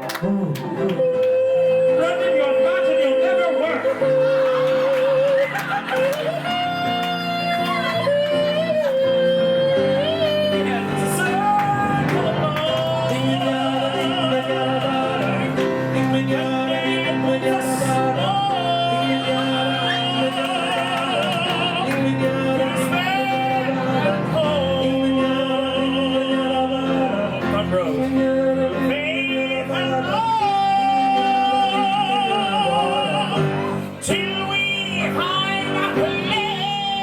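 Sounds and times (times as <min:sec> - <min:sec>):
operatic singing: 0:00.0 - 0:37.0
piano accompaniment: 0:00.0 - 0:37.0.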